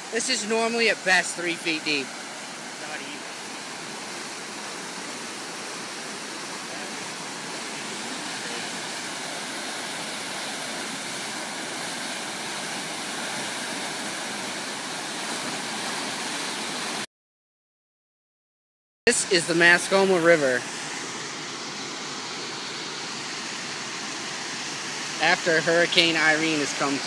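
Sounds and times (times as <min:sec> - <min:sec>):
flood water rushing under bridge: 0:00.0 - 0:17.0.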